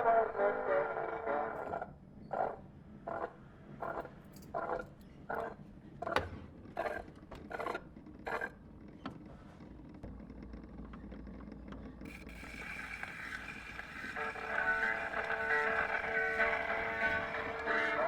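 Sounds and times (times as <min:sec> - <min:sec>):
gramophone mechanism rumble: 0:05.1 - 0:18.0
gramophone crank winding scrapes: 0:12.1 - 0:18.0.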